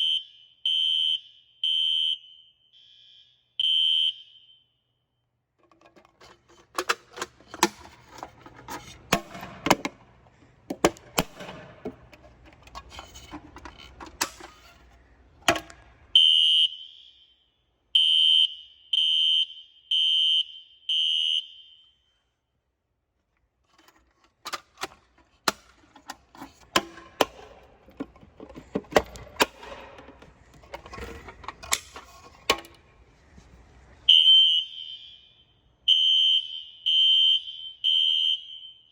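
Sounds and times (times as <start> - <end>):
fire alarm horn blasts: 0.0 - 5.3, 16.1 - 22.4, 34.1 - 38.9
clattering knocks and clicks: 5.6 - 10.1, 10.7 - 15.8, 23.7 - 32.8.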